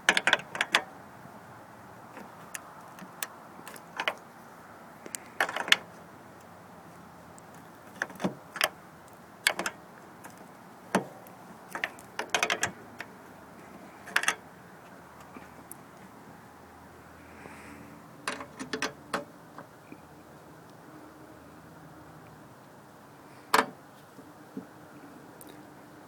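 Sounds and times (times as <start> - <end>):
hand tools and parts clattering: 0.0 - 0.8, 2.1 - 4.3, 5.0 - 6.5, 7.4 - 8.8, 9.4 - 14.4.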